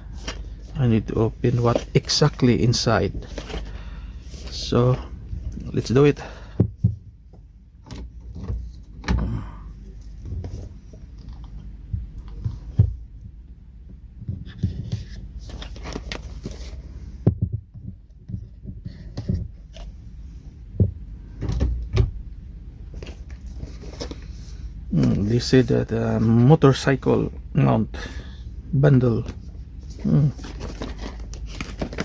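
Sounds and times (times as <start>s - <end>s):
packaging rustling: 1.4s - 4.8s, 29.8s - 32.0s.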